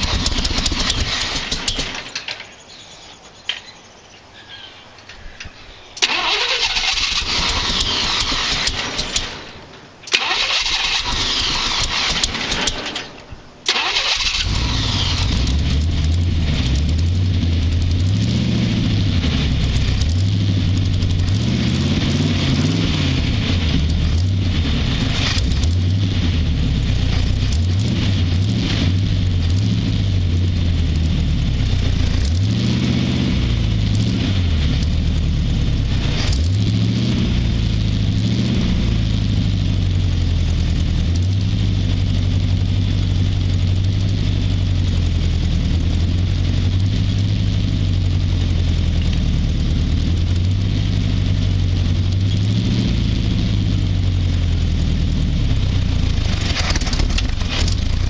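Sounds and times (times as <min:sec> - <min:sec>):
engine revving: 0:00.0 - 0:02.1, 0:06.0 - 0:58.0
engine cranking on starter: 0:00.0 - 0:02.3, 0:06.0 - 0:17.2, 0:56.0 - 0:58.0.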